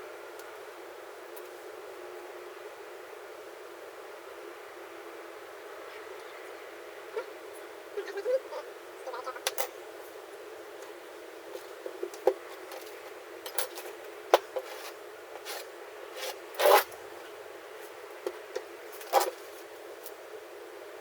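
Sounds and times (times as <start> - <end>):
hand tool scraping sand: 14.5 - 17.0.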